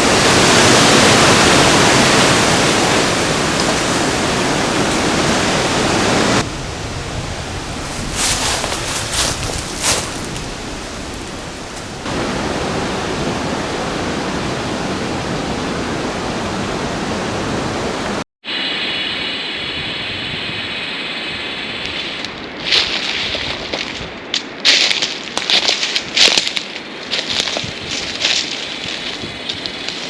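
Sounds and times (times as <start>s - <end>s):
waterfall roar: 0.0s - 18.2s
sharp crackles: 7.1s - 12.3s.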